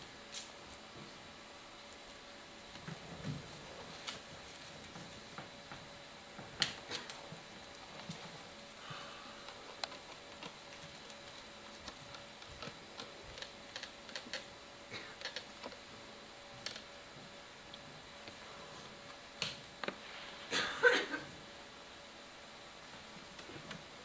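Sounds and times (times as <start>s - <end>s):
faint steady hum: 0.0s - 24.0s
small clicks and taps: 9.4s - 14.5s, 15.2s - 15.8s.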